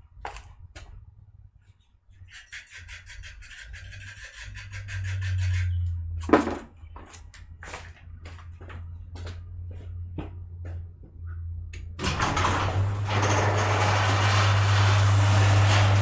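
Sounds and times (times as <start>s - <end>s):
air blower rushing: 12.0s - 16.0s.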